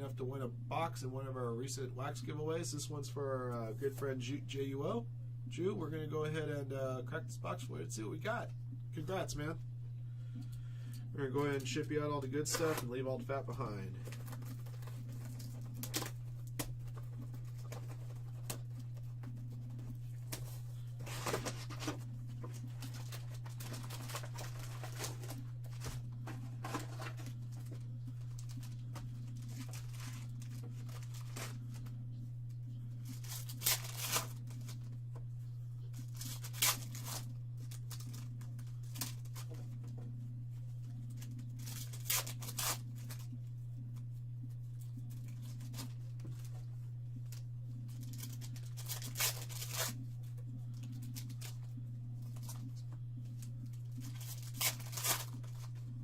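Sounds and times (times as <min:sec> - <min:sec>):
wrappers ripping and crinkling: 0:12.4 - 0:31.9, 0:33.0 - 0:34.9, 0:35.9 - 0:39.6, 0:41.1 - 0:43.4, 0:47.3 - 0:55.9.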